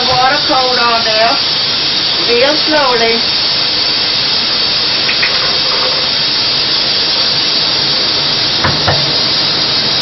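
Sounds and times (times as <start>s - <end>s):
tap water running over metal pot: 0.0s - 10.0s.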